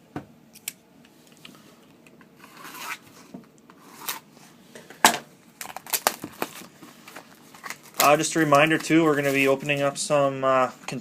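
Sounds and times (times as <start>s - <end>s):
plastic wrap tearing: 5.6s - 9.7s.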